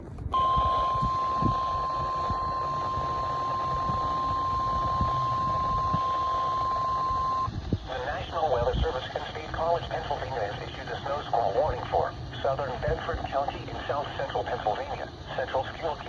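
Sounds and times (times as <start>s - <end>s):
steady high alarm tone: 0.4s - 7.6s.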